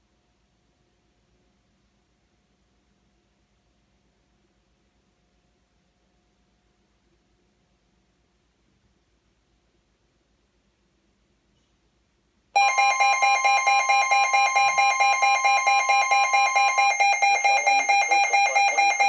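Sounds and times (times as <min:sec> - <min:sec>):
harsh pulsing electronic alert tone: 0:12.6 - 0:19.0.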